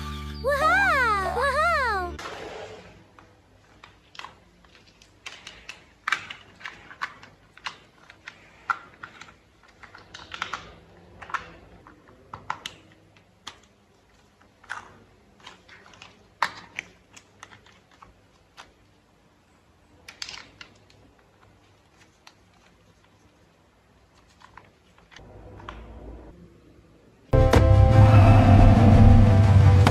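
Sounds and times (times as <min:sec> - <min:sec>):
plastic parts clicking and snapping: 0:03.6 - 0:19.0, 0:19.9 - 0:25.9
plastic parts scraping: 0:03.6 - 0:19.0, 0:20.0 - 0:25.7.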